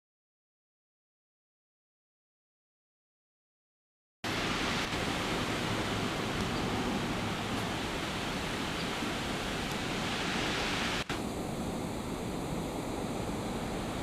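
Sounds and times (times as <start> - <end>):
steady rushing hiss: 4.2 - 14.0.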